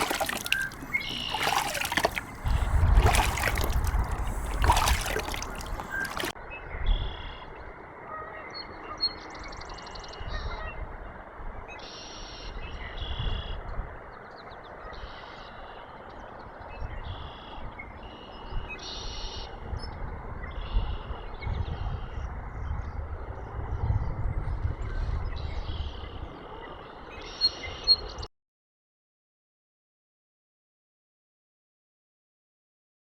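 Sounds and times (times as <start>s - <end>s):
frogs trilling: 0.0s - 6.3s.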